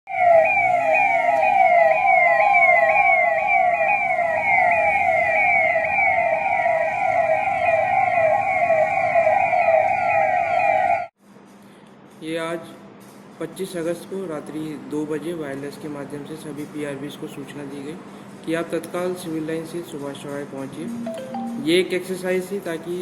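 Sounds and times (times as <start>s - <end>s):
police siren wail: 0.1s - 11.1s
police siren yelp: 0.1s - 11.1s.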